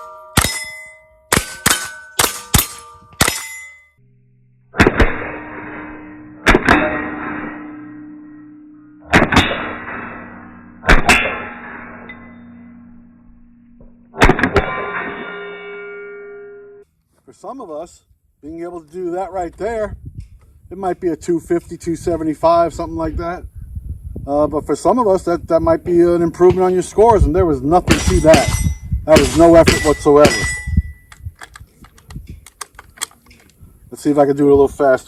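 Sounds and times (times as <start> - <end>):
rifle shots: 0.0 - 3.7, 4.8 - 7.7, 9.1 - 12.1, 14.2 - 15.1, 27.9 - 30.6
bullets ringing steel plate: 0.0 - 4.0, 4.8 - 16.8, 27.8 - 31.1.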